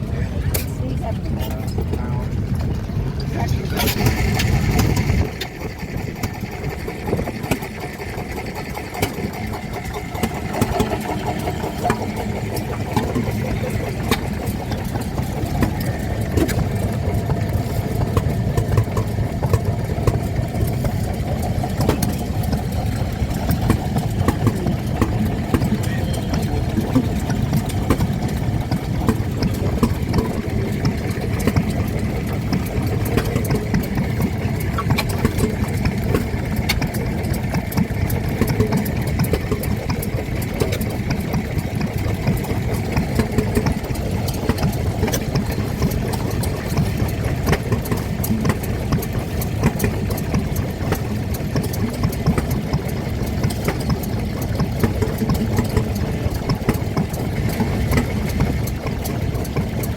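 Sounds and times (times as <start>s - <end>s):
stationary engine idling: 0.0s - 59.9s.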